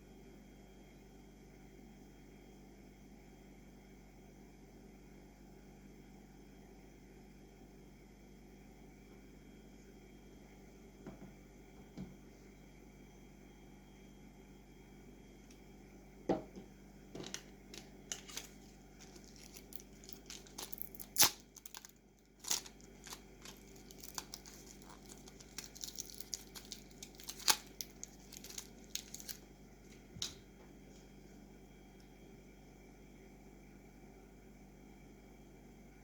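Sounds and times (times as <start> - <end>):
packaging crinkling: 17.2 - 30.4
packaging ripping: 17.8 - 30.4.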